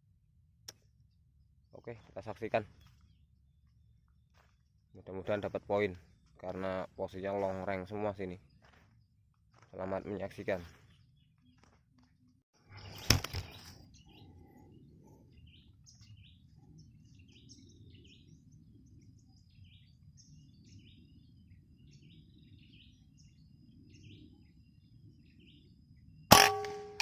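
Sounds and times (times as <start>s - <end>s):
low outdoor background: 0.0s - 27.0s
faint bird chirps: 1.7s - 26.3s
sharp bang: 26.3s - 27.0s.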